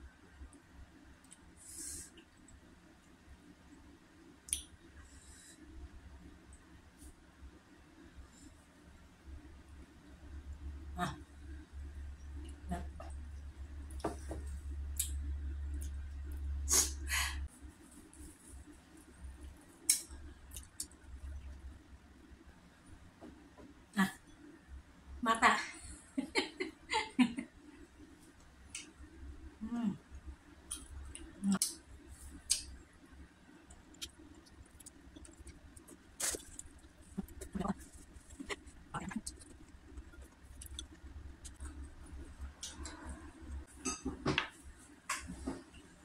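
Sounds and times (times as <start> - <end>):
low steady hum: 0.0 - 46.0
eating smacks and sucking: 33.7 - 42.0.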